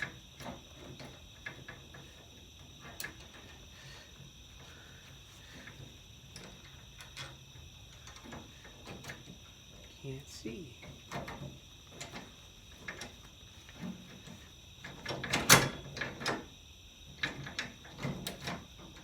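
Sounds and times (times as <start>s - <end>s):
insect chirring: 0.0s - 19.0s.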